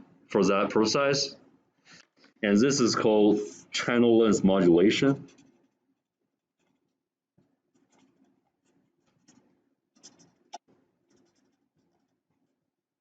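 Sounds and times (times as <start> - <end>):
pen scratching while writing: 5.2 - 5.9, 7.7 - 12.6.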